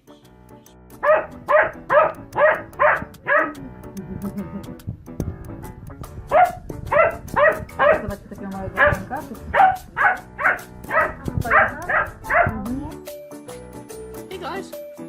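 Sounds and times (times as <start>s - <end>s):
background music: 0.0s - 15.0s
puppy barking: 1.0s - 3.6s, 6.2s - 12.7s.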